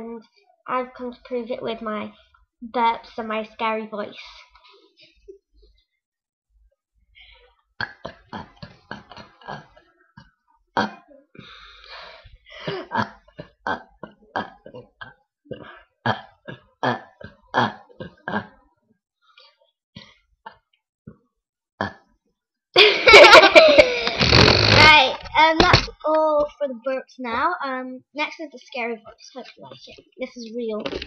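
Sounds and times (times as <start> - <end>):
girl burping: 7.8 - 9.9, 10.8 - 11.3, 12.6 - 18.6, 23.6 - 25.2.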